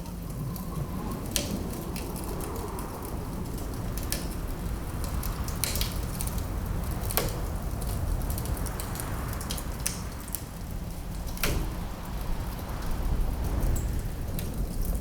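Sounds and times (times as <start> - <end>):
low rumble of wind: 0.0 - 15.0
wood fire crackling: 0.0 - 15.0.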